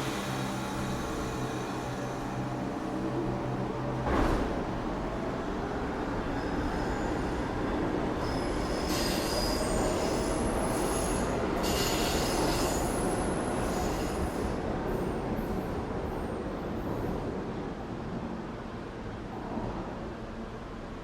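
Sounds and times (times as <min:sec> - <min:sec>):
subway train rumbling on rails: 0:00.0 - 0:21.0
train wheels squealing: 0:06.2 - 0:15.8.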